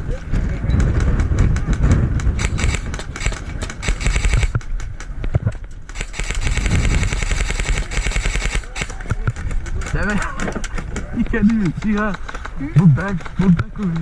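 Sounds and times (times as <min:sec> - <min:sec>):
wind on microphone: 0:00.0 - 0:14.0
airsoft guns firing full auto: 0:02.4 - 0:04.9, 0:05.9 - 0:09.9.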